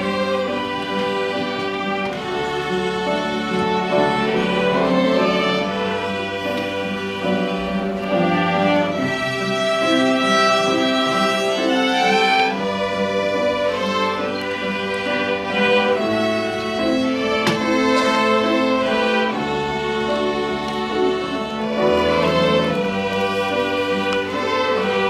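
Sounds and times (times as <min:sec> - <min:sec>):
melody of held notes: 0:00.0 - 0:25.0.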